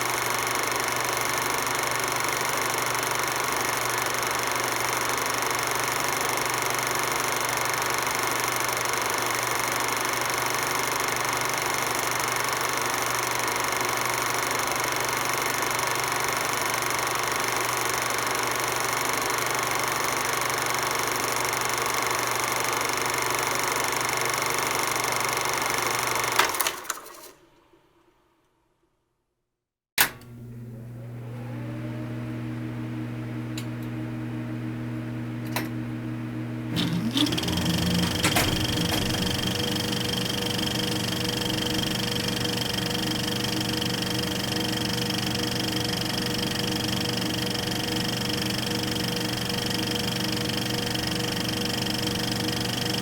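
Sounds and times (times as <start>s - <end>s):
film projector clattering: 0.0s - 27.3s, 36.7s - 53.0s
projector switch click: 30.0s - 30.3s, 36.7s - 41.8s.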